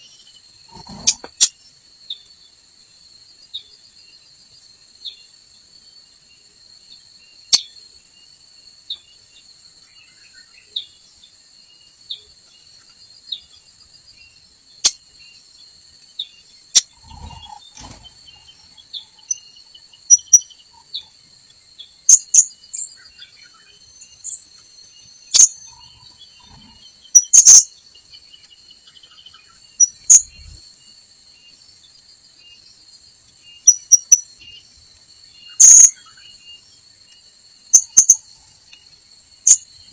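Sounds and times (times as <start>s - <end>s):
insect drone: 0.0s - 39.9s
parrot chirping: 0.7s - 1.5s, 20.0s - 20.5s, 22.1s - 22.5s, 25.3s - 27.7s, 29.8s - 30.4s, 33.7s - 34.2s, 35.6s - 36.0s.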